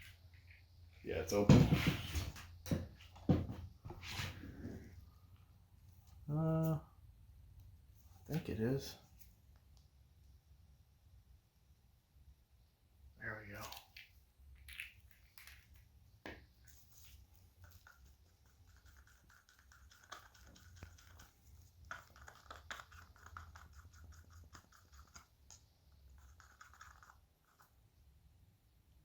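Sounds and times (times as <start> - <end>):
stick stirring resin in cup: 16.5 - 27.8.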